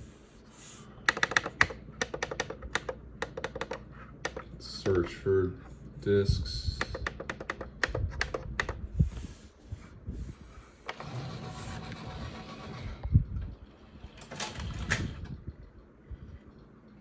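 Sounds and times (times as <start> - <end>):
mechanism clicks and clunks: 1.0 - 5.2, 6.7 - 8.8, 10.8 - 15.5.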